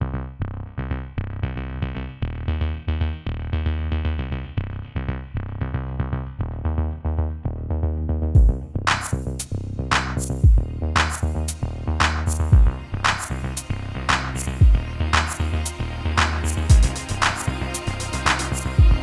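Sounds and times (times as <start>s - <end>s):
electronic music with drum-machine beat: 8.4s - 19.0s.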